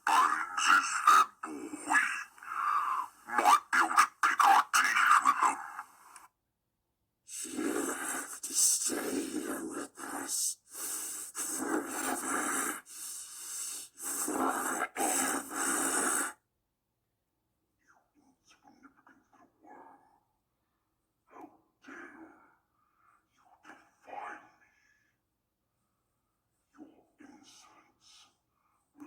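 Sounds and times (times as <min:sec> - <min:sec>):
raspy wheezing hissing breaths: 0:00.0 - 0:04.3, 0:07.3 - 0:16.4.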